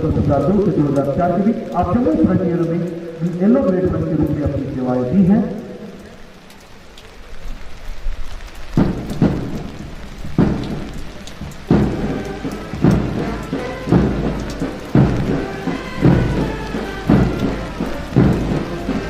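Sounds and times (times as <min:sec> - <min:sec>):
steady rain: 0:00.0 - 0:19.0
bass drum beats: 0:08.8 - 0:19.0
brass chords: 0:11.7 - 0:19.0.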